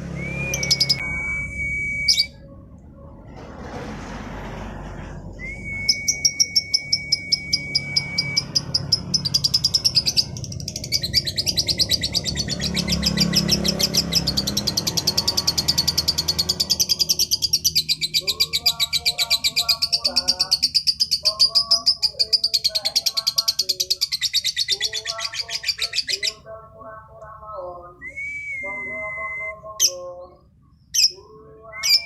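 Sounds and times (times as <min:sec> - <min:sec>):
bird whistled note: 0:00.1 - 0:02.4, 0:05.4 - 0:08.5
lovebird chattering: 0:06.1 - 0:26.4.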